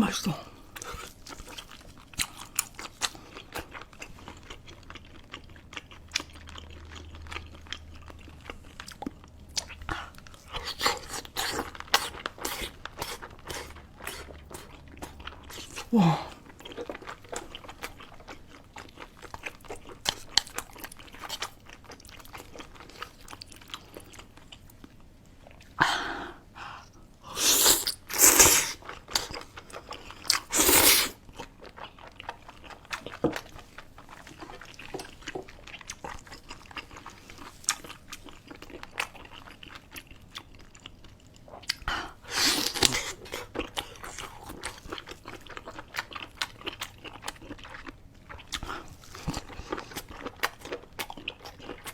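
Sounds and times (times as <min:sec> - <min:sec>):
wet chewing: 0:27.5 - 0:51.9
biting or slurping bursts: 0:30.4 - 0:31.2.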